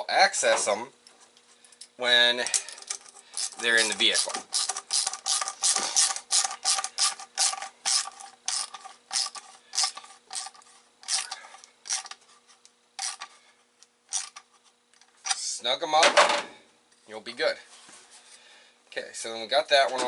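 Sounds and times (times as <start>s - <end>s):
hose clamp ratcheting clicks: 2.5s - 11.3s.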